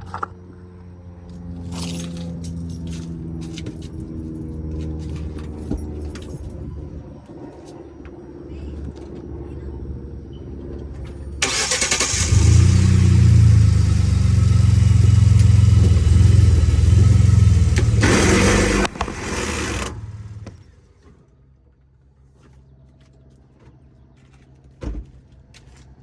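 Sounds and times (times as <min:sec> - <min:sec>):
pickup truck engine running: 0:11.4 - 0:20.7
loud grinding noise: 0:12.3 - 0:20.6.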